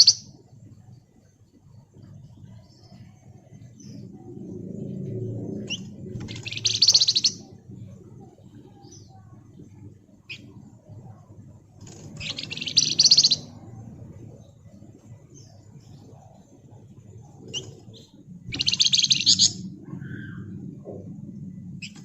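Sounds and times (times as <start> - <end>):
songbird chattering: 5.7 - 7.6, 12.1 - 13.9, 15.2 - 20.5.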